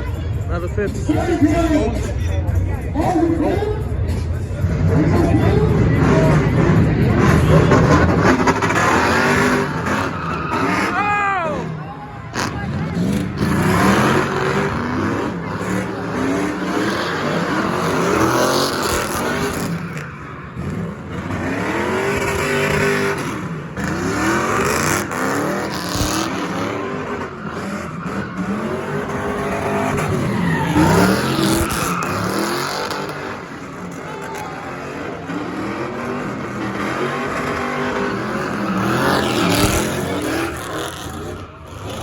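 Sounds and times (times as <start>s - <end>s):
car engine revving: 0.0s - 42.0s
tyres squealing: 7.2s - 42.0s.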